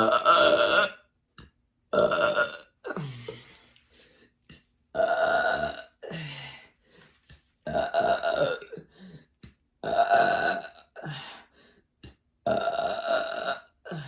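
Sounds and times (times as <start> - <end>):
woman belching loudly: 0.0 - 1.0, 2.0 - 3.2, 5.0 - 6.2, 7.7 - 8.8, 9.8 - 11.0, 12.5 - 14.0.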